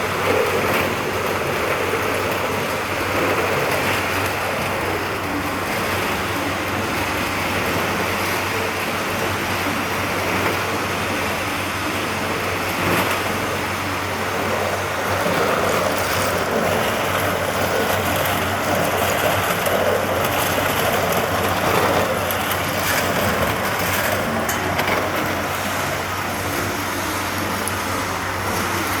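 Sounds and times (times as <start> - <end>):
mechanical running noise: 11.2 - 29.0.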